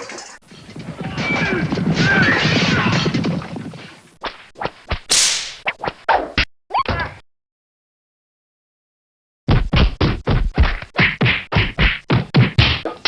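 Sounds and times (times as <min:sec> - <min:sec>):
noisy scuffle: 0:00.0 - 0:04.2.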